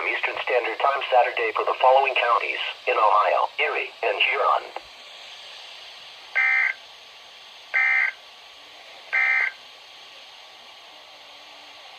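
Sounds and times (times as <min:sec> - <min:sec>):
steady hiss: 0:00.0 - 0:11.9
shrill warbling data bursts: 0:06.4 - 0:06.8, 0:07.8 - 0:08.2.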